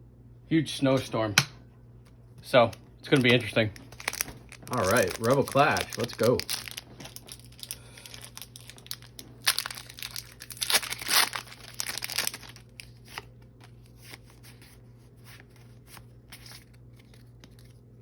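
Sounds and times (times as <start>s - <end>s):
foil wrapper tearing and crinkling: 3.1s - 14.6s, 15.9s - 17.8s.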